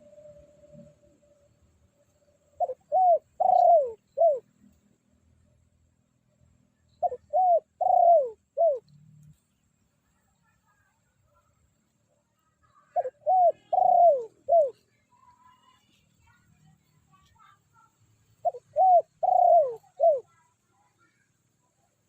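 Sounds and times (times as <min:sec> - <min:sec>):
dove cooing: 0:02.6 - 0:04.5, 0:07.0 - 0:08.9, 0:12.8 - 0:14.8, 0:18.4 - 0:20.4.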